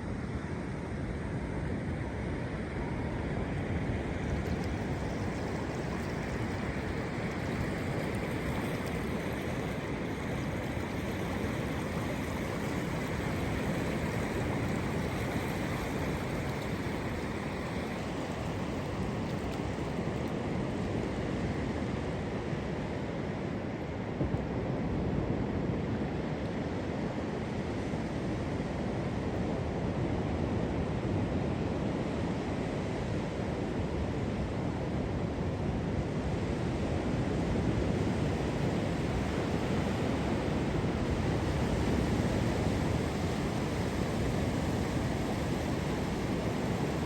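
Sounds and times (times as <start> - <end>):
rushing water: 2.6 - 24.1, 37.6 - 47.0.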